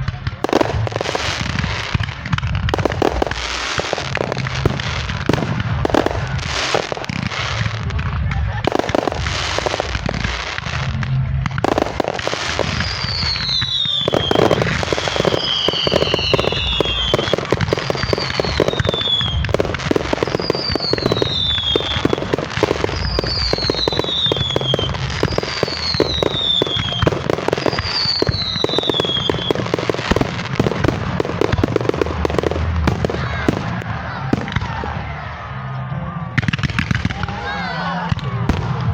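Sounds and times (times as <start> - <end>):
fireworks crackling and popping: 0.0 - 38.9.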